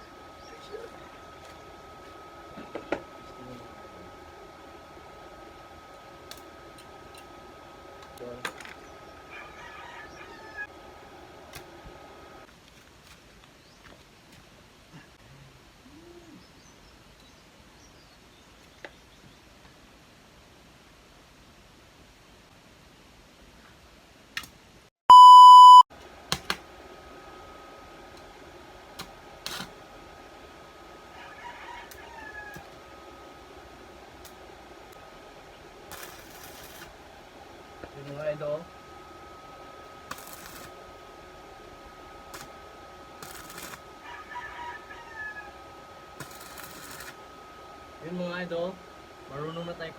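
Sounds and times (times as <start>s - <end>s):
faint steady hum: 0.0s - 49.9s
loud electronic beep: 25.1s - 25.8s
faint high whine: 25.1s - 25.9s.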